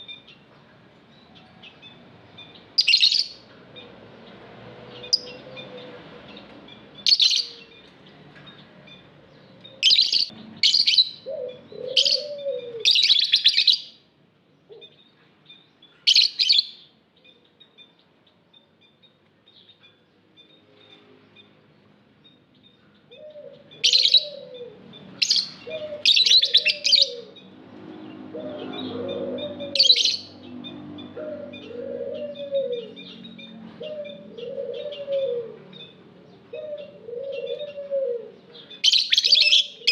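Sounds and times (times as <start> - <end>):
lovebirds shrill calls: 1.2 - 3.9, 4.9 - 14.0, 14.7 - 17.4, 22.6 - 36.0, 36.6 - 39.9
low cooing calls: 4.8 - 14.0, 14.6 - 15.1, 22.9 - 39.9.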